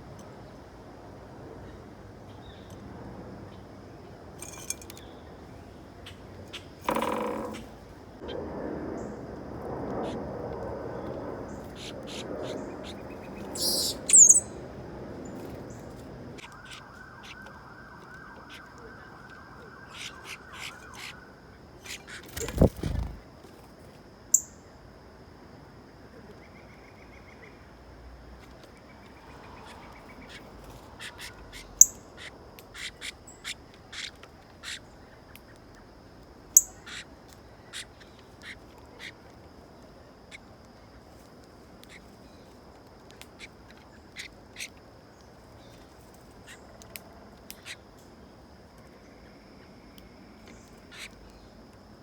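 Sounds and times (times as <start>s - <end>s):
birds chirping: 11.0s - 23.2s.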